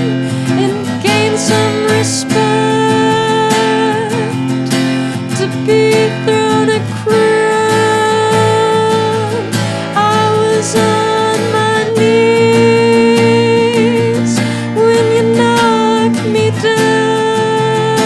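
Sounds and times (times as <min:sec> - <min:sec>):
song with acoustic guitar: 0:00.0 - 0:18.0.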